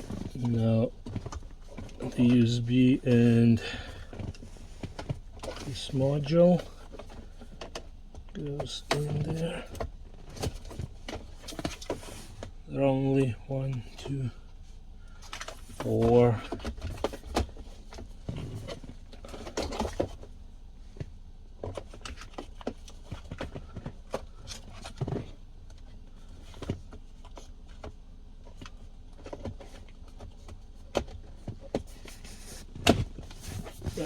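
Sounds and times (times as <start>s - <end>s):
plastic parts clicking and scraping: 15.1s - 20.3s.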